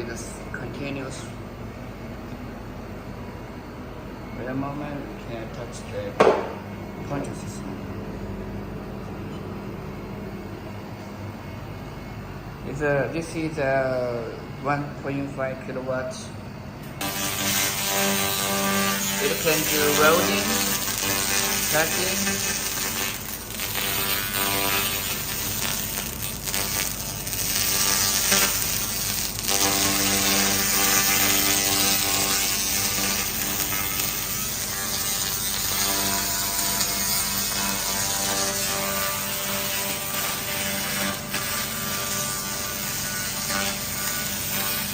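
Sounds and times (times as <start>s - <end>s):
laser cleaning machine buzzing: 17.0s - 44.9s.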